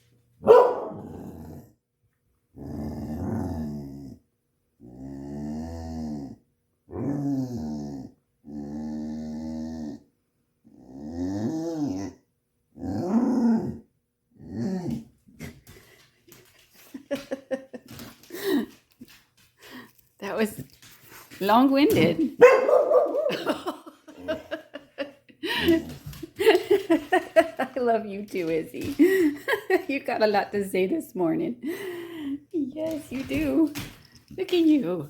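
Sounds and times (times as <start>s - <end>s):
dog yipping: 0.5s - 1.0s, 22.4s - 23.3s.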